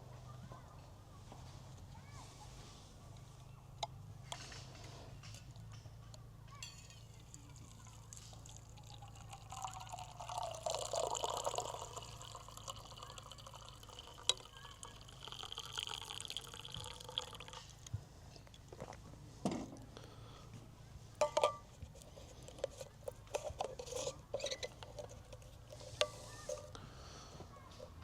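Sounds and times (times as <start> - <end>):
liquid pouring into container: 7.2 - 17.9.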